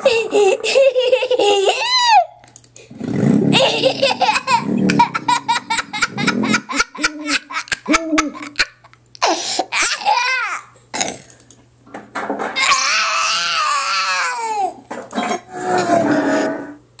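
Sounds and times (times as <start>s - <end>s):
baby laughing: 0.0s - 2.4s, 3.5s - 10.7s.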